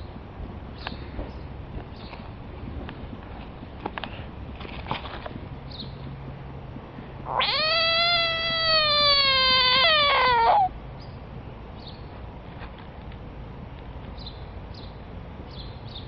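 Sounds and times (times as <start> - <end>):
frog distress scream: 7.2 - 10.8.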